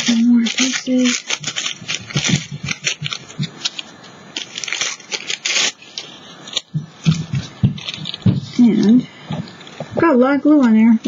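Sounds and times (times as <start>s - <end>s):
paper ripping: 0.0s - 8.7s
tissue paper crinkling: 0.0s - 9.9s.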